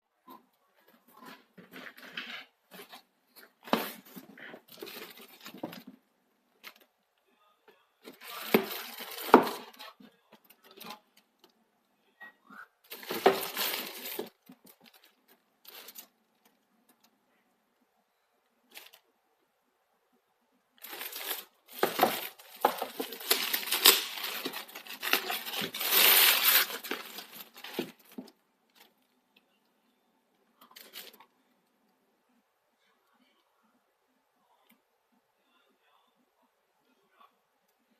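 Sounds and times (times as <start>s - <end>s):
packaging rustling and tearing: 8.2s - 9.8s, 12.9s - 16.1s, 20.8s - 28.3s.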